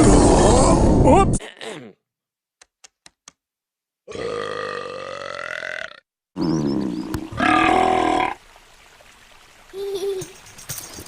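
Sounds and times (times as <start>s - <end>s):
long belches: 4.1s - 8.4s.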